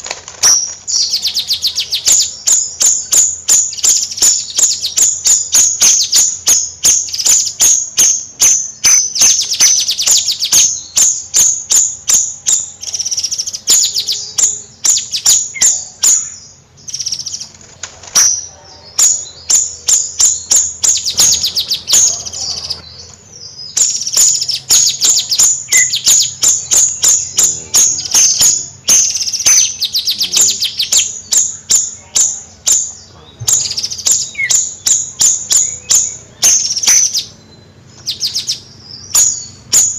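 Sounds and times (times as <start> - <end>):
songbird chattering in sharp high notes: 23.7 - 37.4.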